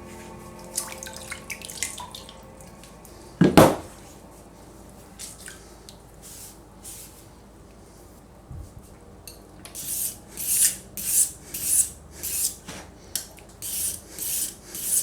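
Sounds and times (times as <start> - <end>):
water dripping: 0.3 - 3.2.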